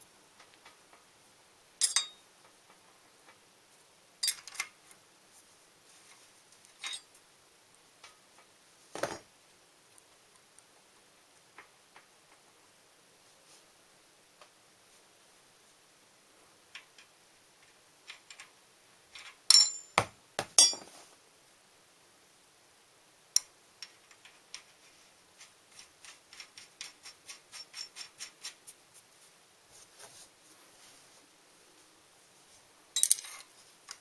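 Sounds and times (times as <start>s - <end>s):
metal tools clinking: 1.8s - 2.2s, 6.8s - 7.1s, 19.5s - 20.0s, 20.6s - 21.0s, 33.0s - 33.5s.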